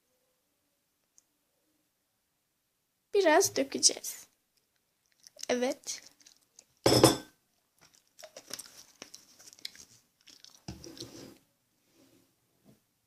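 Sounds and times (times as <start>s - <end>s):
gel squelching and squishing: 4.5s - 6.8s, 7.5s - 11.4s.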